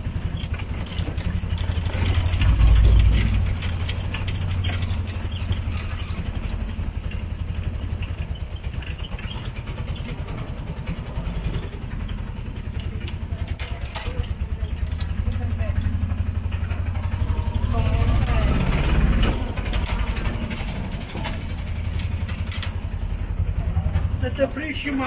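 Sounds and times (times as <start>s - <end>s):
small engine putter: 0.0s - 25.0s.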